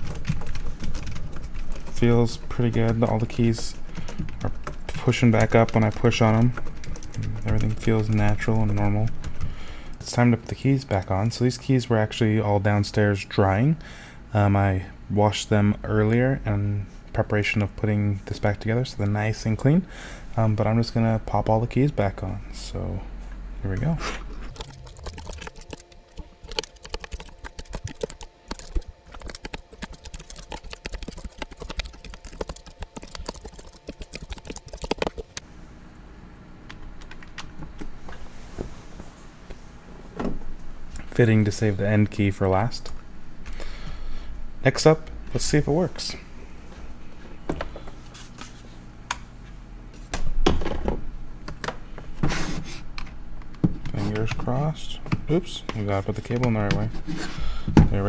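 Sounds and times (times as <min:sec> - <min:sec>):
keycaps clicking onto keyboard: 0:00.0 - 0:09.5, 0:24.6 - 0:35.4.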